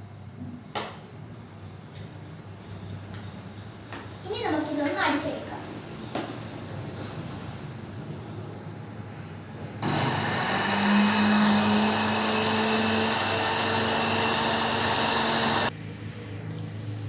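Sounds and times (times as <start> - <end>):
electric kitchen mixer running: 9.8 - 15.7.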